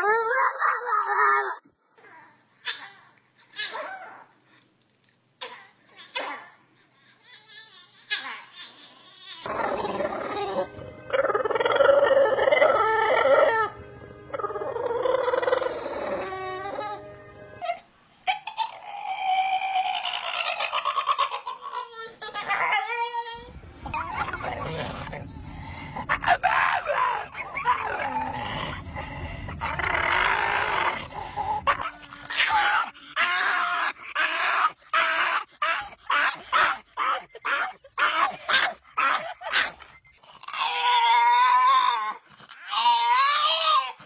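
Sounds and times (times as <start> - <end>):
dog howling: 9.4 - 17.0, 22.4 - 38.4.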